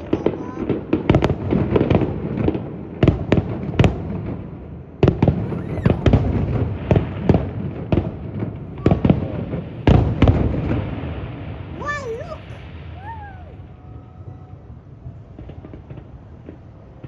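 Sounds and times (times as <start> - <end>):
fireworks crackle: 5.2 - 13.6.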